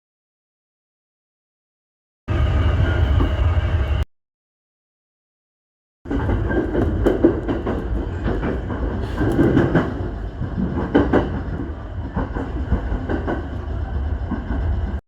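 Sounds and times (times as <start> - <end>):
train low rumble: 2.3 - 4.1, 6.1 - 15.0
wheels clacking over rail joints: 6.1 - 14.8.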